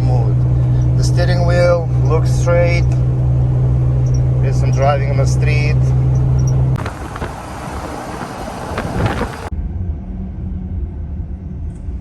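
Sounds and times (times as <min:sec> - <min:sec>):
low engine hum: 0:00.0 - 0:09.5
wind and road noise: 0:00.0 - 0:09.5.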